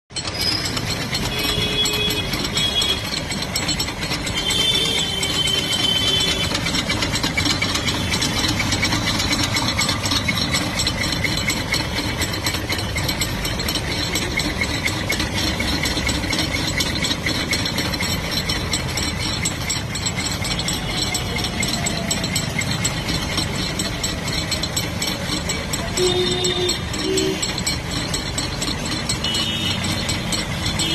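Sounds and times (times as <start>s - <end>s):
car wheel ratcheting clicks: 0.1s - 30.9s.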